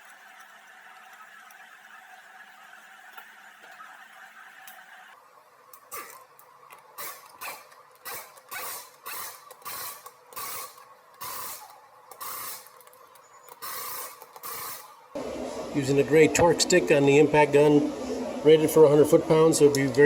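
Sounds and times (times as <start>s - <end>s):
hand ratchet clicking: 7.0s - 14.9s.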